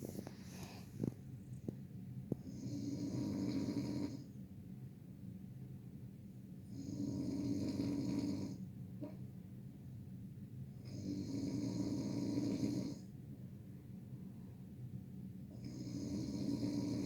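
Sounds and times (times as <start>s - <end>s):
quiet breathing: 0.0s - 4.4s
person snoring loudly: 2.6s - 4.2s, 6.8s - 8.6s, 15.6s - 17.0s.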